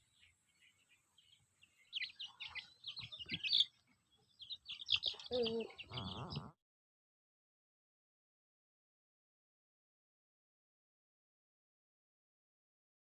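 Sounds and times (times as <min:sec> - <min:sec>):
chicks peeping: 0:00.1 - 0:06.6
harsh chicken call: 0:05.2 - 0:06.5.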